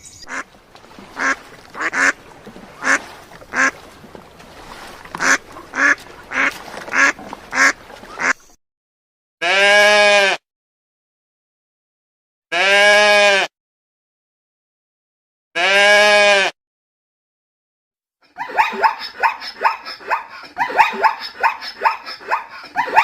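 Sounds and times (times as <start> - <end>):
duck quacking: 0.3 - 3.9, 4.8 - 8.4, 18.4 - 23.0
sheep bleat: 9.4 - 10.4, 12.5 - 13.5, 15.6 - 16.6.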